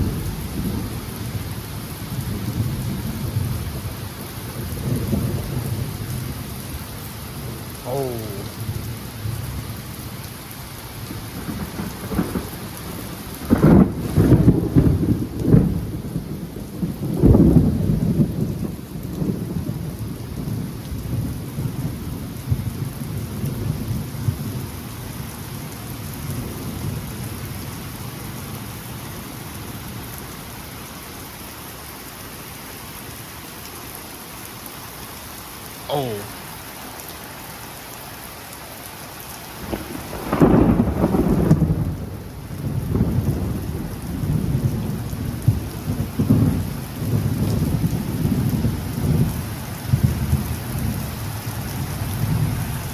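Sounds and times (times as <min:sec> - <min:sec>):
rain falling: 0:00.0 - 0:52.9
thunder cracking and rumbling: 0:11.2 - 0:24.8, 0:39.6 - 0:52.9.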